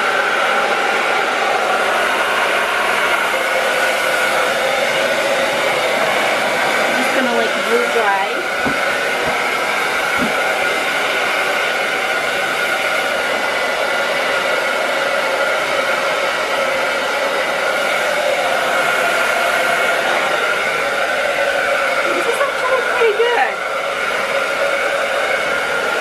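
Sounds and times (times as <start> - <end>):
hair dryer blowing: 0.0 - 26.0.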